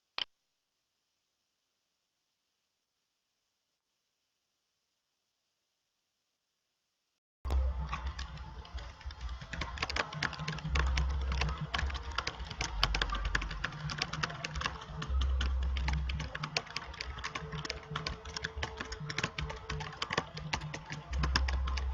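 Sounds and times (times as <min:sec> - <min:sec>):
rapid irregular clicking: 0:07.5 - 0:21.9.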